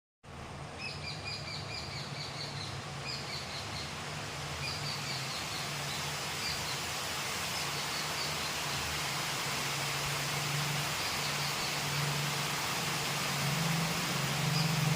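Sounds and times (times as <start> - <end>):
bird chirping: 0.8 - 3.9, 4.6 - 6.8, 14.4 - 14.9
rain falling: 3.7 - 14.9.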